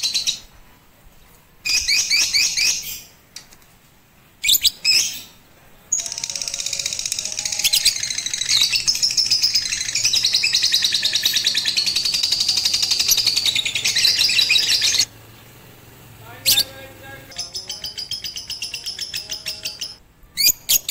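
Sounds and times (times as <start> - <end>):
lovebird rapid chattering trill: 5.9 - 15.1, 16.4 - 20.9.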